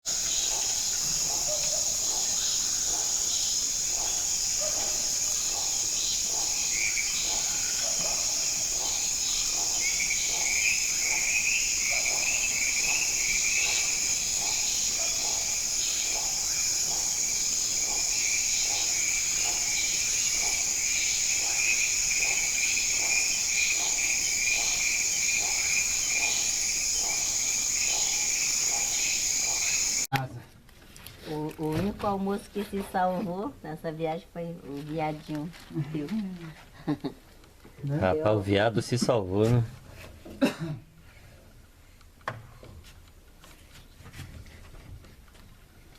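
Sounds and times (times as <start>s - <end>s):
high insect drone: 0.1s - 30.1s.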